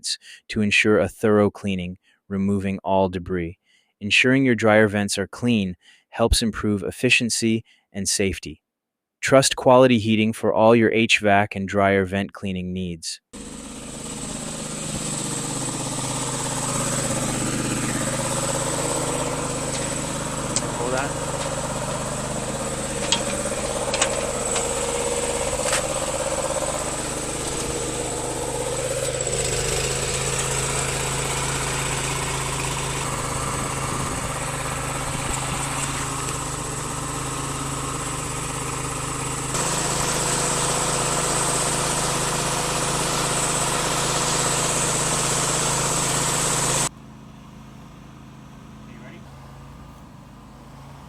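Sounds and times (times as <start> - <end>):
machine running with high whine: 13.5 - 46.0
sharp knocks: 19.3 - 26.4.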